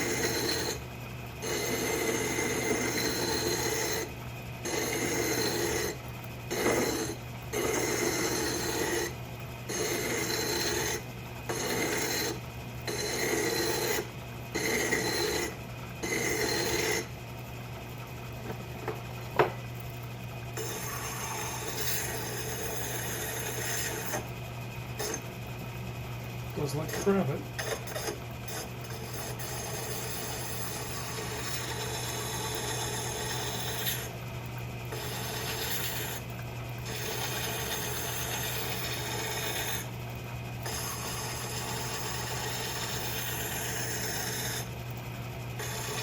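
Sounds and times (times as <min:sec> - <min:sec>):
file rasping on lathe part: 0:00.0 - 0:00.8, 0:01.4 - 0:04.1, 0:04.7 - 0:17.1, 0:20.6 - 0:24.2, 0:26.6 - 0:34.1, 0:34.9 - 0:36.2, 0:36.8 - 0:39.9, 0:40.7 - 0:44.7, 0:45.6 - 0:46.0.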